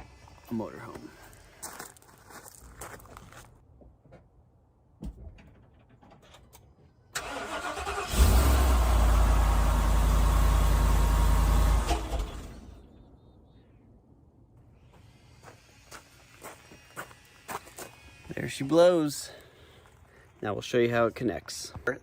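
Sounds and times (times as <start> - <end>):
starter motor cranking: 7.2 - 9.2
engine running: 7.2 - 13.0.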